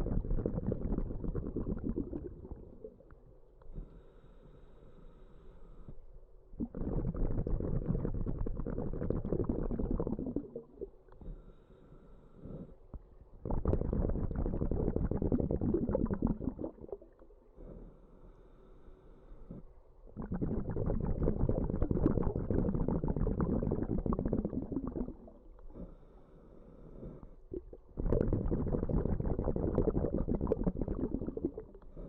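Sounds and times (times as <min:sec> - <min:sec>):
exhaled bubbles bubbling: 0:00.0 - 0:03.2, 0:06.6 - 0:11.0, 0:13.4 - 0:17.3, 0:20.1 - 0:25.8, 0:27.5 - 0:32.0
diver inhaling through regulator: 0:03.7 - 0:10.6, 0:11.2 - 0:12.9, 0:17.6 - 0:32.0.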